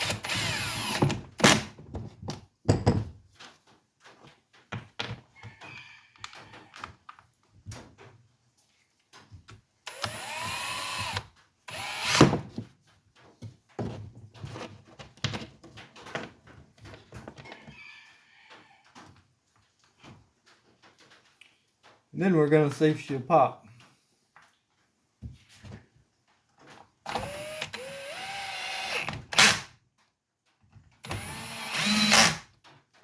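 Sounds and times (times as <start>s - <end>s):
small power tool motor: 0.0s - 1.1s, 9.9s - 12.3s, 27.1s - 29.7s, 31.0s - 32.5s.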